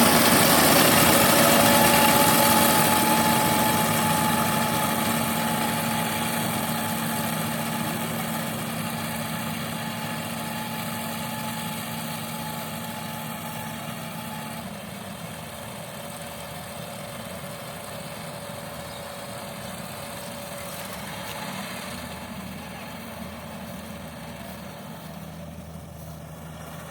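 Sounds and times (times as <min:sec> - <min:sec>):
combine harvester diesel engine: 0:00.0 - 0:26.9.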